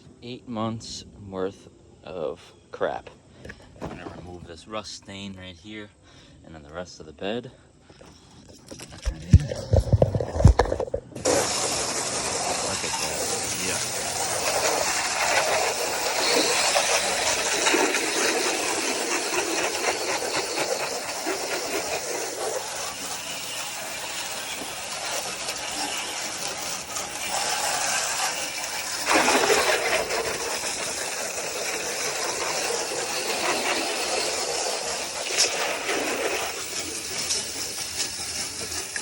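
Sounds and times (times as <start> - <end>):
pressure washer spraying water: 11.2 - 39.0.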